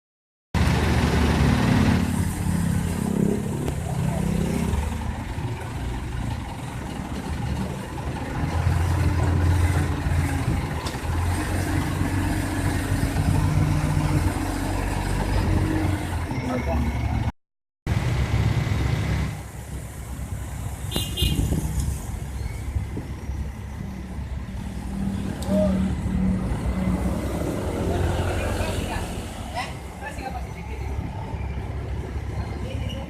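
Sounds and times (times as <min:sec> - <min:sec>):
heavy engine humming: 0:00.6 - 0:17.3.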